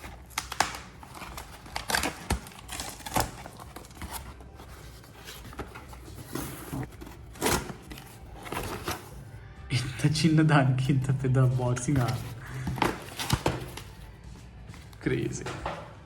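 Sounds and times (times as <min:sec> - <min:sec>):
handling cardboard and plastic box: 0:00.0 - 0:09.2, 0:11.4 - 0:14.1.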